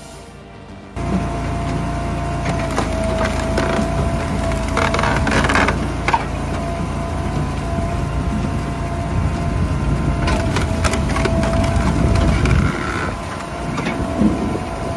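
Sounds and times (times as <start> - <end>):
faint steady whine: 0.0 - 14.9
wood-processing machine droning: 0.0 - 14.9
wood splitting cracks: 1.0 - 8.1.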